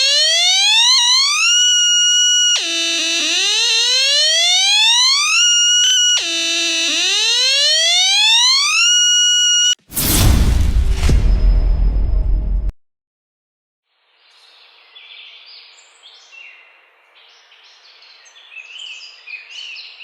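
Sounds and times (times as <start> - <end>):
electronic alarm siren sweeping up: 0.0 - 10.3.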